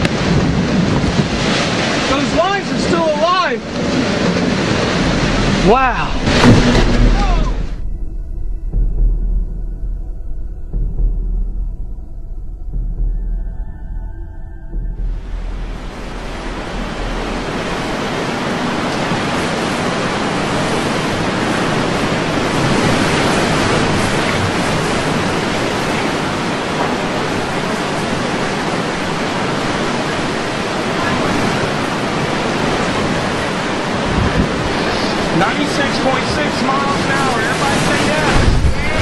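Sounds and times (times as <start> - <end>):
strong wind blowing across microphone: 0.0 - 8.0, 15.8 - 39.0.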